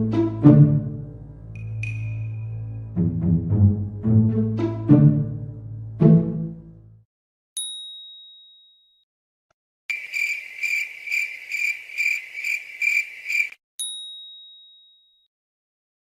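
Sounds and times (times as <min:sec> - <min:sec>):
bright bell ding: 0:01.6 - 0:02.6, 0:07.6 - 0:09.1, 0:13.8 - 0:15.2
crickets chirping: 0:09.9 - 0:13.6.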